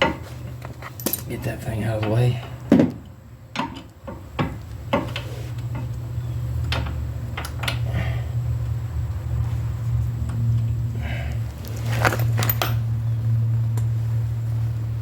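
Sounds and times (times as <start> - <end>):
steady low hum: 4.7 - 15.0.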